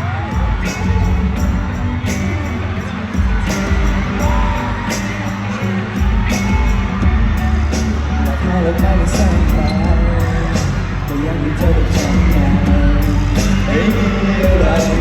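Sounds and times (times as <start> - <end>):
live pop band playing: 0.0 - 15.0
person singing: 0.0 - 15.0
drum hits: 0.3 - 11.0.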